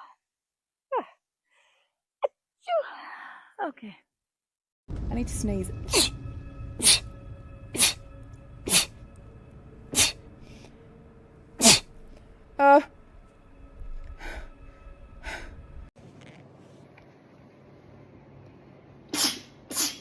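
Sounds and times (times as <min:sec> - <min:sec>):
person sneezing: 0:06.8 - 0:07.0, 0:07.8 - 0:08.0, 0:08.7 - 0:08.9, 0:09.9 - 0:10.2, 0:11.6 - 0:11.9, 0:19.1 - 0:20.0.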